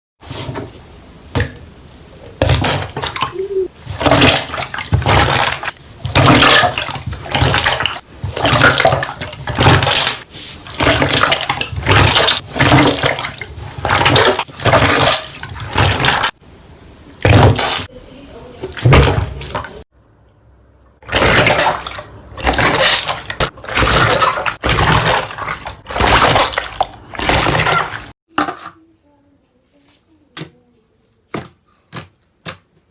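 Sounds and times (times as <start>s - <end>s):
slime squelching by hand: 2.2s - 16.4s, 17.2s - 18.0s, 18.6s - 19.8s, 21.0s - 28.2s.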